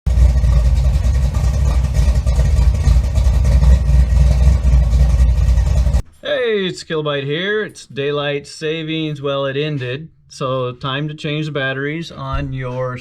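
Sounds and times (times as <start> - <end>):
engine running with low rumble: 0.1 - 6.0.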